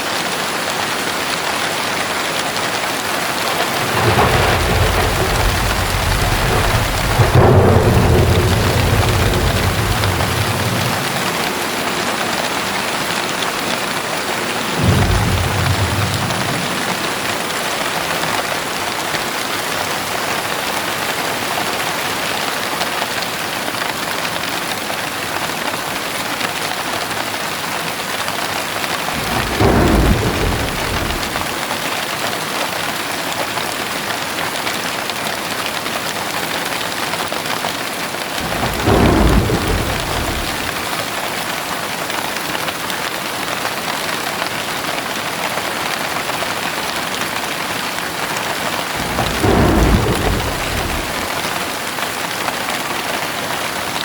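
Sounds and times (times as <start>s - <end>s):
heavy rain falling: 0.0s - 54.0s
low rolls of thunder: 3.2s - 18.8s, 29.0s - 31.8s, 38.4s - 41.2s, 48.8s - 52.0s.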